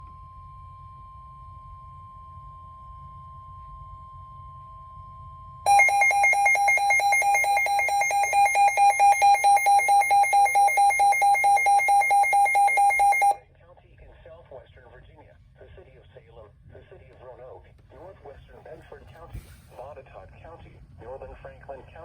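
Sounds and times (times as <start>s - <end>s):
faint steady tone: 0.0s - 13.4s
pulsing electronic alarm tone: 5.7s - 13.4s.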